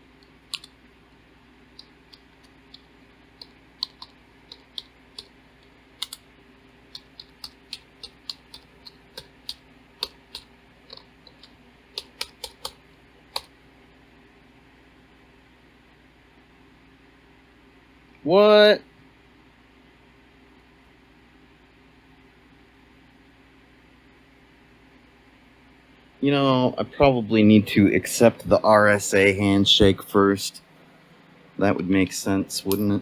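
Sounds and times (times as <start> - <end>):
computer keyboard typing: 0.5 - 0.8, 1.7 - 5.3, 6.0 - 6.2, 6.9 - 13.5.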